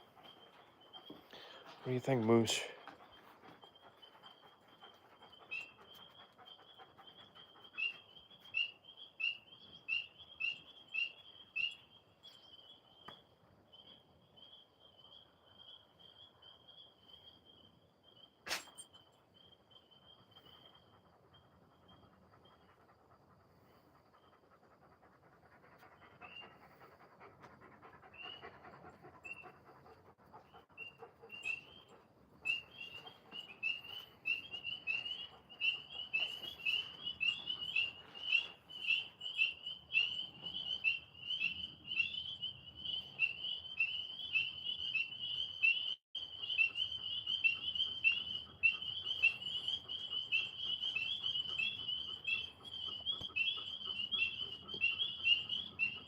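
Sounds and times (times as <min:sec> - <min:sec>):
dog panting: 0:00.0 - 0:13.1, 0:19.9 - 0:42.0, 0:46.6 - 0:56.0
tree frogs chirping: 0:00.0 - 0:56.0.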